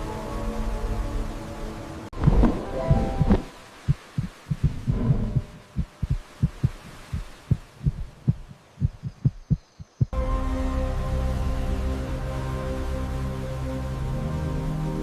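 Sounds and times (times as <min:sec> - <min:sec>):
short deep thumps: 0:02.2 - 0:10.2.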